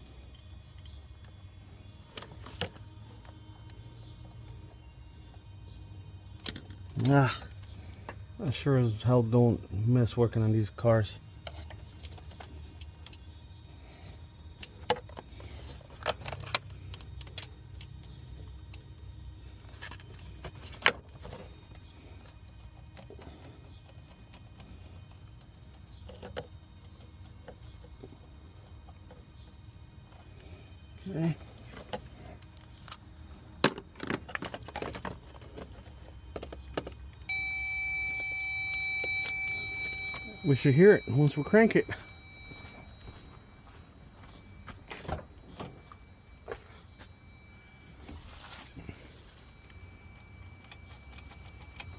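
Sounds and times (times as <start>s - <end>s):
steady electronic tone: 34.7s - 51.9s.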